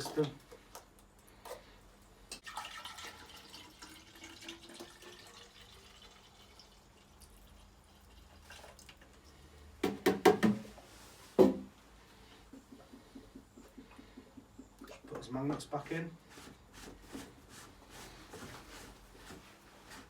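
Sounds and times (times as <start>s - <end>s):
liquid pouring trickle: 2.4s - 9.5s.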